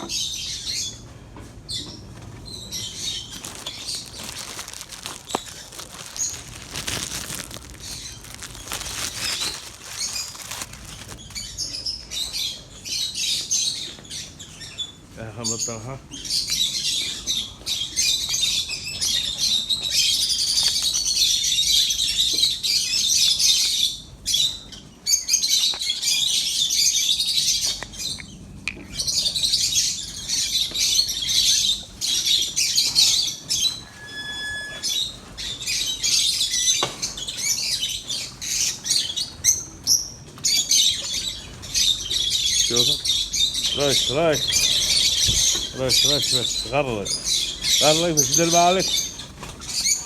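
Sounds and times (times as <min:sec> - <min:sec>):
lovebirds chattering and squawking: 0:01.6 - 0:33.9, 0:34.8 - 0:50.0
clear pitched bird call: 0:01.8 - 0:13.5.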